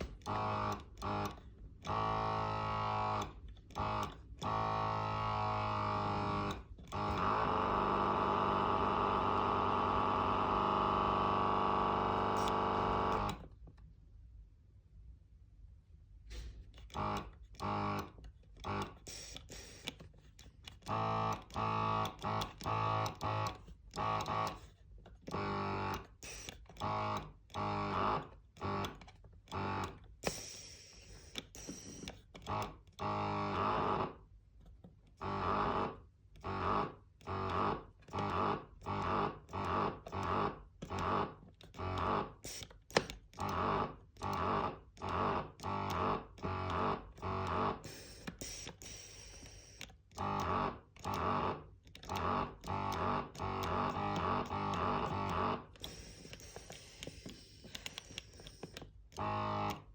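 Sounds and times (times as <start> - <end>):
pump pulsing rough hum: 0.0 - 13.5, 35.2 - 59.9.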